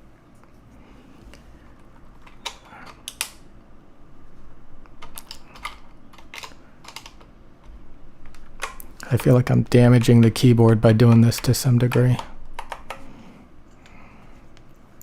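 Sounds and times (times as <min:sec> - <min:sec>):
keycaps clicking and snapping: 0:01.8 - 0:03.5, 0:04.8 - 0:13.1.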